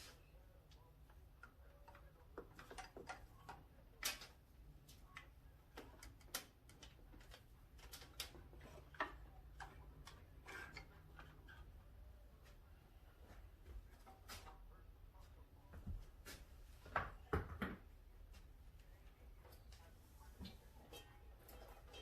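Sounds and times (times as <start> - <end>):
tools clicking and tapping: 0.7 - 11.7.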